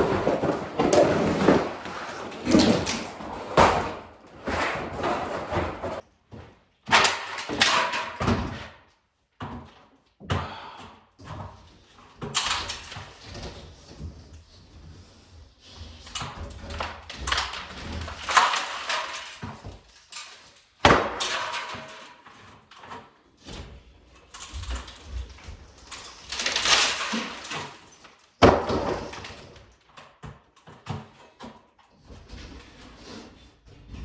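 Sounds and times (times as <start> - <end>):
materials dragged and scraped: 0.0 - 6.0.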